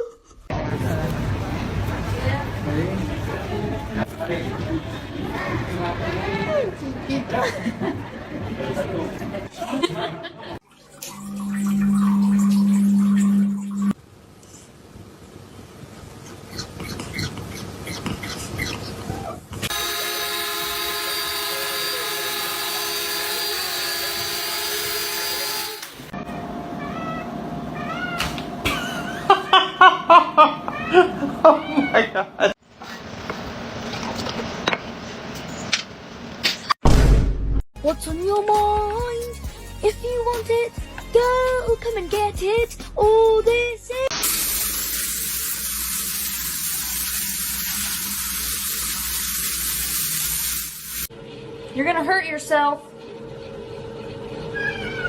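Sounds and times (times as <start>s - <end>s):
motor whine: 11.0s - 14.0s
steady hiss: 44.1s - 51.1s.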